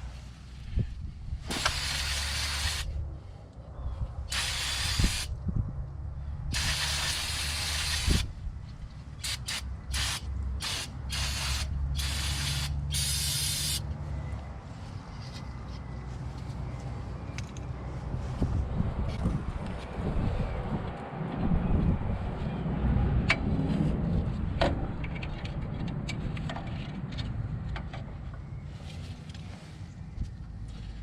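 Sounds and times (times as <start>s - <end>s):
pressurised spray hissing: 1.5s - 2.9s, 4.3s - 5.3s, 6.5s - 8.2s, 9.2s - 13.8s.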